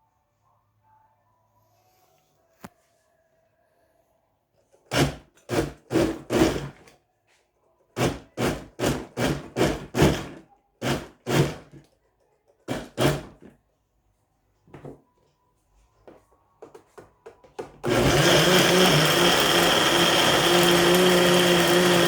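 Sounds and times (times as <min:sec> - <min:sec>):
blender whirring bursts: 0:17.9 - 0:22.0.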